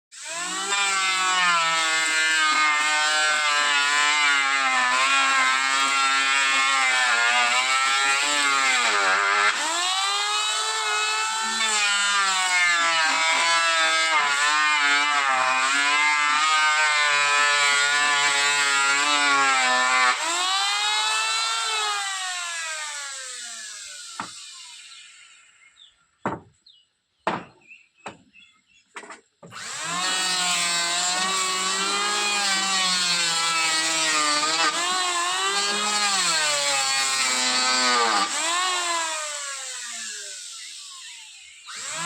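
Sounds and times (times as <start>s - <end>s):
power tool motor whining: 0.2s - 25.5s, 29.5s - 42.0s.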